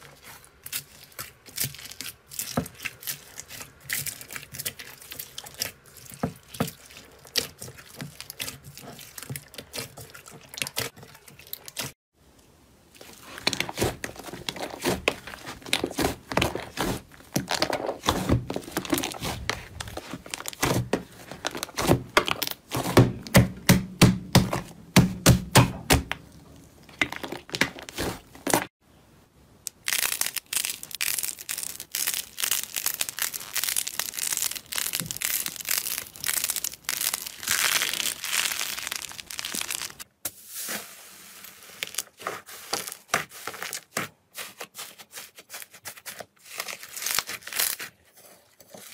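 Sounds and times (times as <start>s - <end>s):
slime squeezed crackling: 29.7s - 40.1s.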